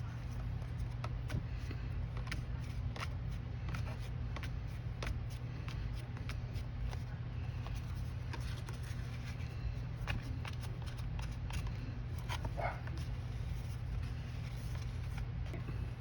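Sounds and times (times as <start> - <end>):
steady low hum: 0.0 - 16.0
paper card taps and rustles: 0.1 - 15.8.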